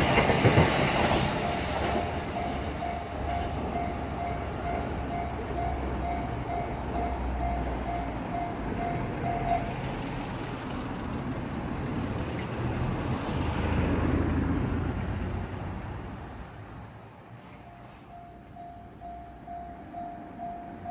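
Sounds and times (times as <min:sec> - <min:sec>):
level crossing alarm clanging: 0:00.0 - 0:09.8, 0:17.6 - 0:20.9
road traffic passing: 0:00.0 - 0:20.9.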